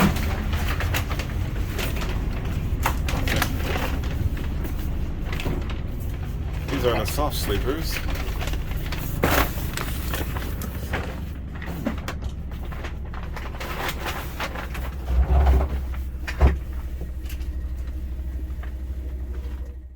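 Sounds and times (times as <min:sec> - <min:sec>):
knocks and clatters: 0:00.0 - 0:19.7
train rumbling: 0:00.0 - 0:19.9.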